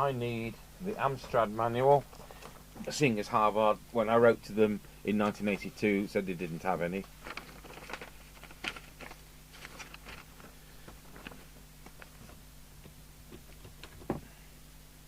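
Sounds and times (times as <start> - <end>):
faint steady hum: 0.0 - 15.0
small clicks and rustles: 7.0 - 14.2.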